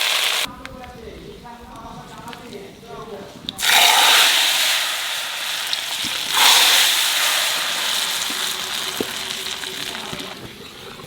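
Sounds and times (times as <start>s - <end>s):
spices sizzling in hot oil: 0.0s - 0.5s, 3.6s - 11.0s.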